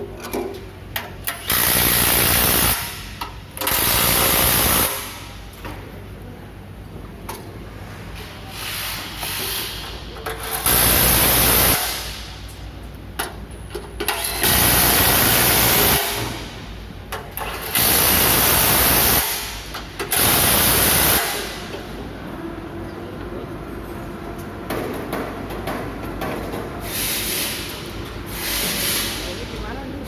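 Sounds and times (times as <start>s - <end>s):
compressed-air tool bursts: 1.3s - 5.3s, 8.5s - 12.4s, 14.2s - 16.5s, 17.4s - 21.7s, 26.8s - 29.3s.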